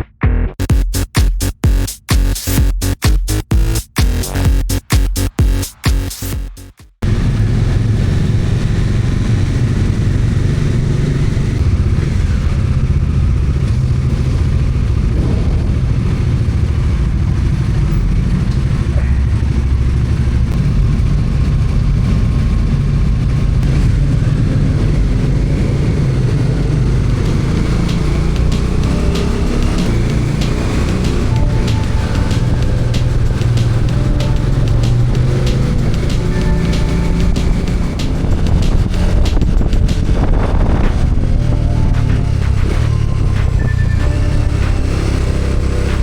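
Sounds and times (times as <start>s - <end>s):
choppy music: 0.0s - 7.0s, 27.0s - 46.0s
motorcycle engine running: 0.0s - 46.0s
wind and road noise: 7.0s - 46.0s.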